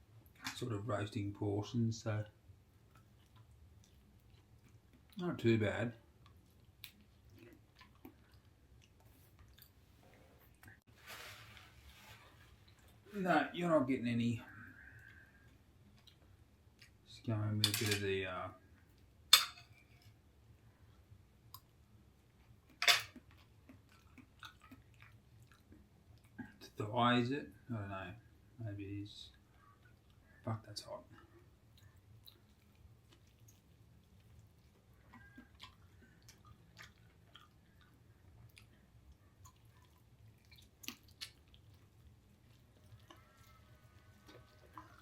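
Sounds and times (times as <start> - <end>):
person chewing: 6.2 - 9.8, 15.0 - 17.0, 22.4 - 26.6, 31.2 - 45.0.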